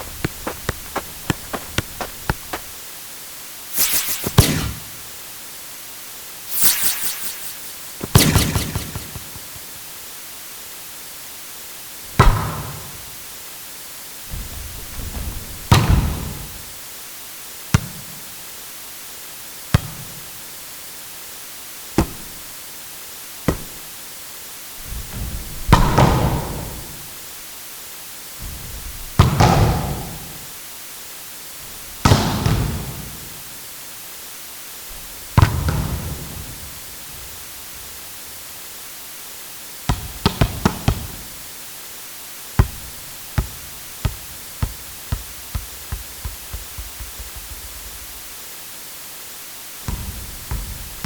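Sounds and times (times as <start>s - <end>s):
volleyball hits echoing: 0.0s - 2.8s, 42.6s - 48.2s, 49.9s - 51.0s.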